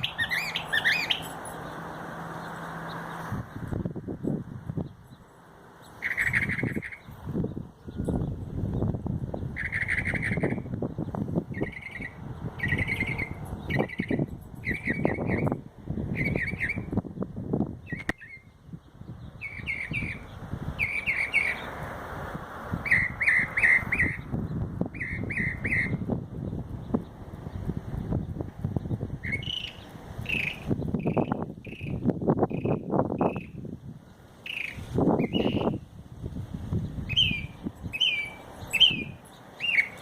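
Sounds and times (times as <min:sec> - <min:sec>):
songbird mimicking car alarm: 0:00.0 - 0:03.8, 0:04.8 - 0:21.8, 0:22.8 - 0:36.0, 0:36.7 - 0:40.0.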